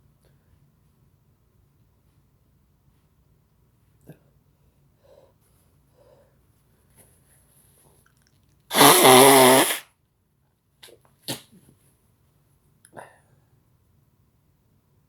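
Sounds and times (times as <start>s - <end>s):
man sneezing loudly: 8.7s - 9.8s.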